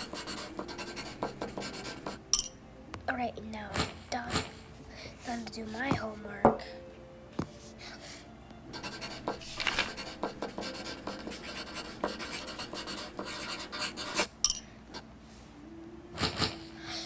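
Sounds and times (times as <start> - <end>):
pen scratching on paper: 0.0 - 2.2, 8.8 - 14.3.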